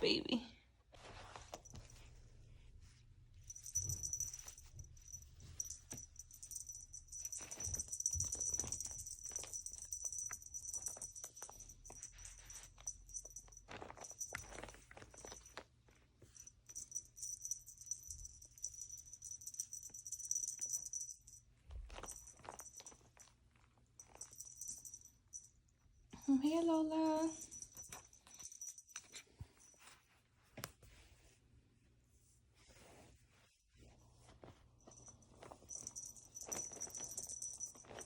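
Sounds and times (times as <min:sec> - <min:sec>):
jingle bell jingling: 0:03.3 - 0:23.4, 0:24.0 - 0:30.0, 0:34.7 - 0:38.0.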